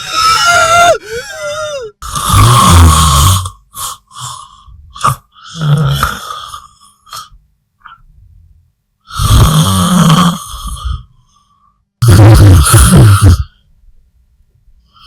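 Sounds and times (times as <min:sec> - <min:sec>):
loud rough snoring: 0:02.0 - 0:06.6, 0:09.1 - 0:11.1, 0:12.0 - 0:13.5.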